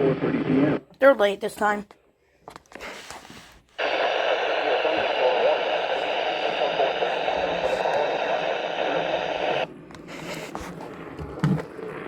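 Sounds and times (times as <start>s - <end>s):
radio hiss and static: 0.0s - 0.9s, 3.8s - 12.0s.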